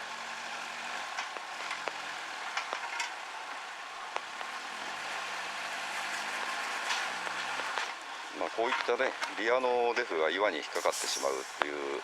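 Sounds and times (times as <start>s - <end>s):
car engine running low: 0.0s - 10.4s
raindrop ticks: 1.2s - 3.2s, 4.1s - 4.6s, 6.9s - 8.0s
rain hissing: 10.6s - 12.0s.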